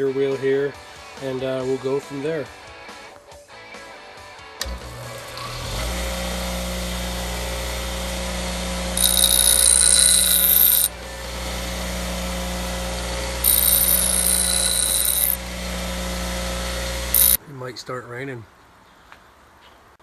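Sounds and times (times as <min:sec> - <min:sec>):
electric grinder running: 0:05.8 - 0:17.4
grinder grinding steel: 0:07.0 - 0:17.4.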